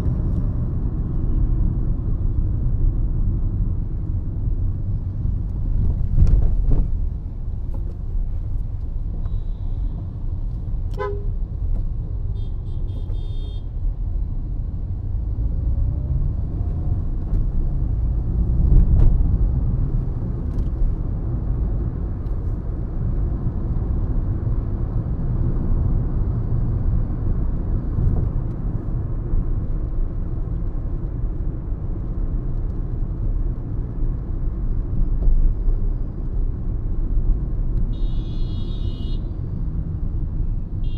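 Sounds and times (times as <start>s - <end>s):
car driving rumble: 0.0s - 40.9s
car horn toots: 10.9s - 11.3s, 12.4s - 13.6s, 37.9s - 39.3s.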